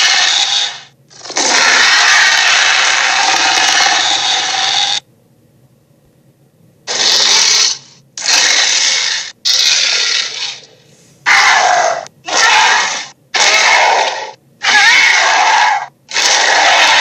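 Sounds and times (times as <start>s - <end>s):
raspy monster roars: 0.0s - 5.0s, 11.3s - 17.0s.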